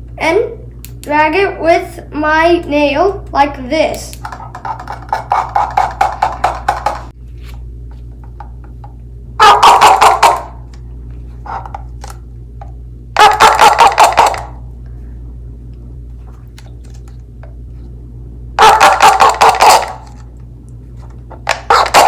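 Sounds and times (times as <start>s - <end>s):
cup noisemaker clucking squawks: 9.4s - 10.6s, 13.2s - 14.6s, 18.6s - 20.1s.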